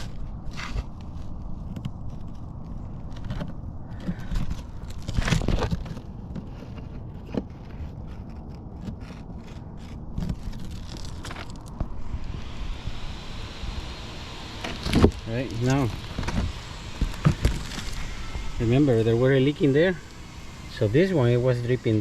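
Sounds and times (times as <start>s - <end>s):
scrapes and clicks: 0.0s - 12.0s
low rumble: 0.0s - 21.0s.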